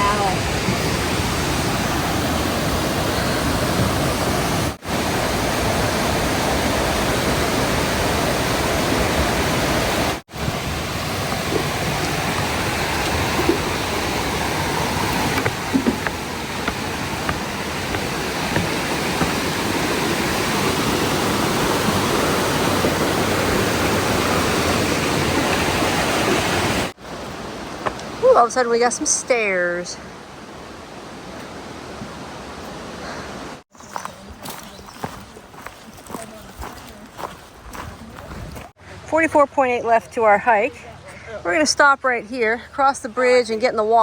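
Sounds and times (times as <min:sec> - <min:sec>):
waterfall rushing: 0:00.0 - 0:29.7.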